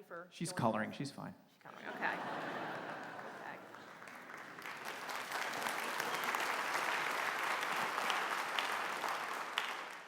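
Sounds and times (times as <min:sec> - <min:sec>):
audience applauding: 0:02.2 - 0:10.0.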